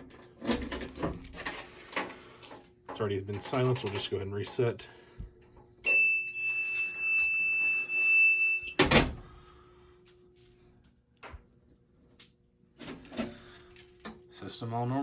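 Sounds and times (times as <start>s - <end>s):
high-pitched alarm panel beep: 5.8s - 8.8s.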